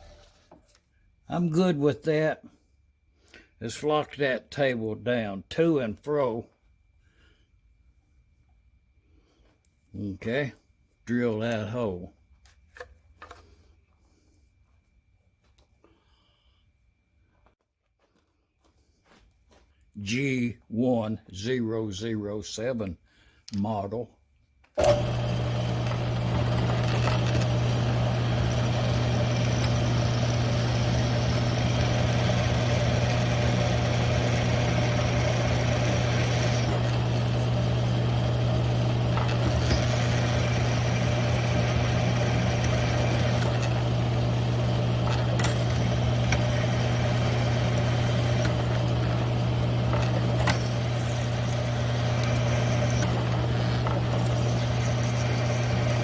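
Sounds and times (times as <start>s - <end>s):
drill motor humming: 24.8s - 56.0s.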